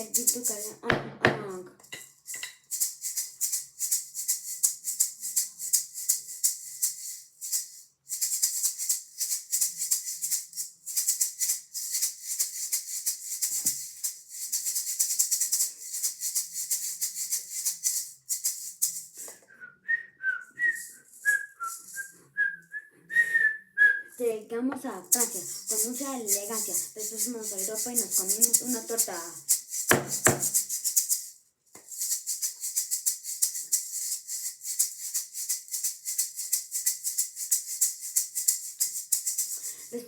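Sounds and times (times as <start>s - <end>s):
rattle shaking rhythmically: 0.0s - 19.4s, 20.5s - 22.2s, 24.2s - 40.0s
person whistling a tune: 19.5s - 24.2s.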